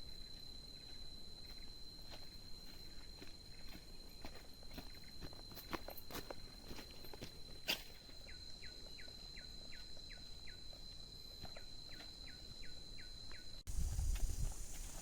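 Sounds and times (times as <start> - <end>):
wind rumble on microphone: 13.7 - 15.0.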